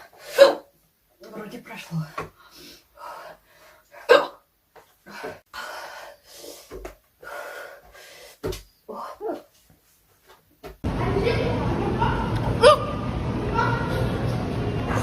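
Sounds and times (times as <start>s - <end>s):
woman hiccuping: 0.4s - 0.7s, 4.1s - 4.4s.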